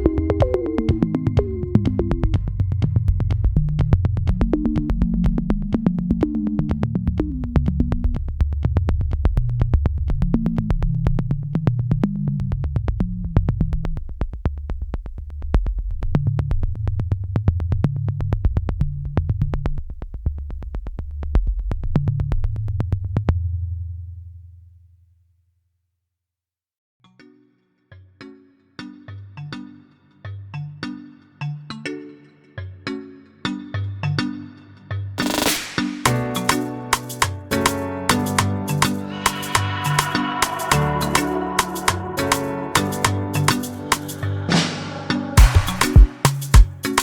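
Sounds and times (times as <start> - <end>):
electronic music with synth bass: 0.0 - 8.3, 35.2 - 47.0.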